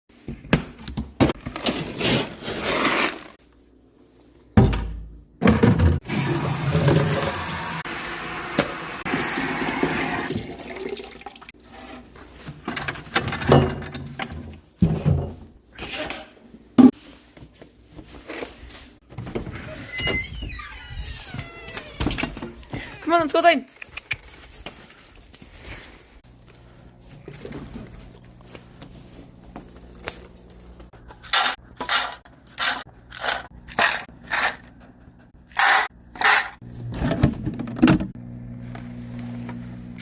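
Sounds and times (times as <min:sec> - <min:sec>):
feed or water pouring: 0:06.0 - 0:12.0.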